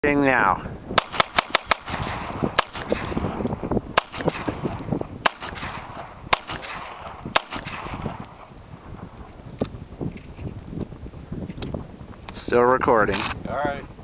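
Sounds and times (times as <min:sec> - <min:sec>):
pistol shots: 0:01.0 - 0:08.5.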